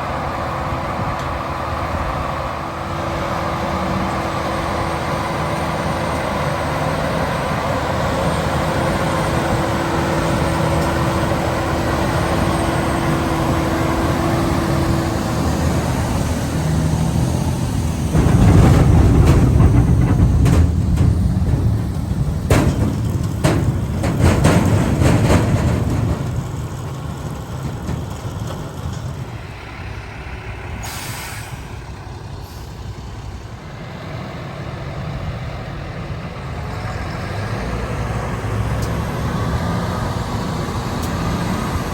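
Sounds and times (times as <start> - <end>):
loud rumble: 0.0 - 34.3
diesel machinery running: 0.0 - 41.9
sharp clattering knocks: 18.0 - 29.3.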